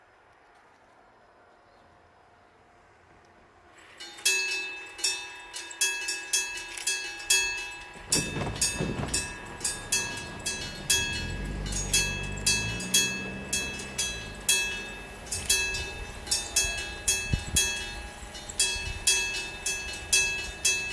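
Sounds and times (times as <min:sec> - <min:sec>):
electric gong bell striking: 0:07.2 - 0:20.9
low rumble: 0:08.0 - 0:16.3
low hums climbing in pitch: 0:08.0 - 0:18.3.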